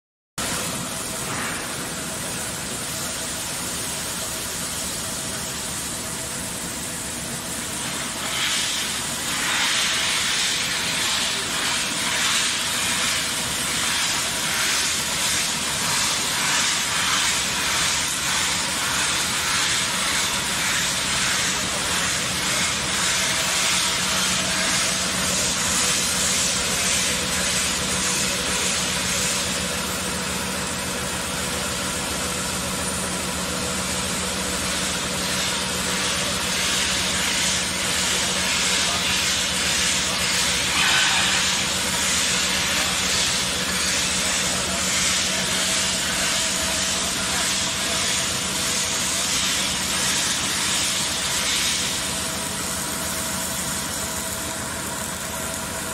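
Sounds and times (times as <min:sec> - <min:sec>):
milling machine hum: 0:00.4 - 0:55.9
milling cutter hissing on steel: 0:07.6 - 0:30.1, 0:34.6 - 0:52.7.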